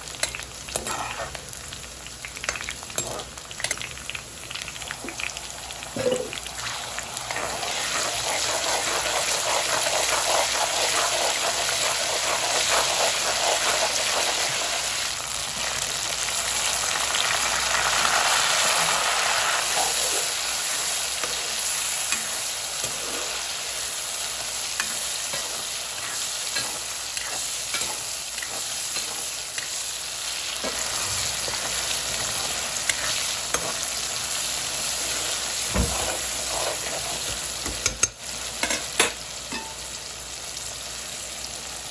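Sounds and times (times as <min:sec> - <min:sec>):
food sizzling in hot oil: 0:00.0 - 0:41.9
spoon scraping a pan: 0:00.2 - 0:01.4, 0:24.4 - 0:29.8, 0:30.6 - 0:33.9, 0:35.1 - 0:39.8.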